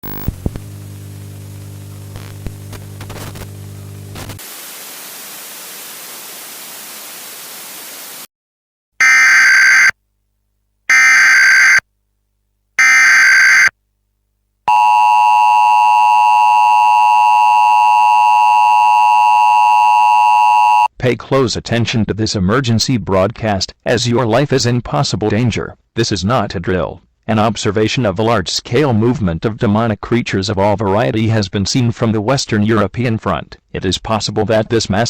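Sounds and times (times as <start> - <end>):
low electrical hum: 0.0 - 4.4
static hiss: 0.0 - 8.3
loud steady alert tone: 9.0 - 9.9, 10.9 - 11.8, 12.8 - 13.7.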